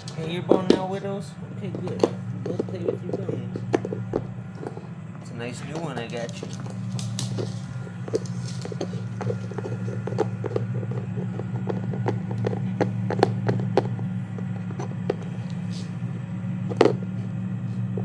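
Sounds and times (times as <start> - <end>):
dogs gnawing on bones: 0.0 - 18.0
idling engine hum: 0.0 - 18.0.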